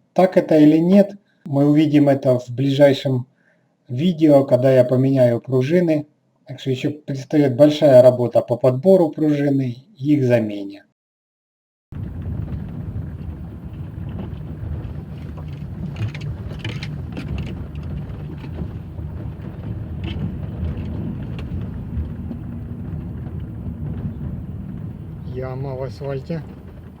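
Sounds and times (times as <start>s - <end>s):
tyres rumbling on rough pavement: 11.9s - 27.0s
suspension knocks: 12.0s - 27.0s.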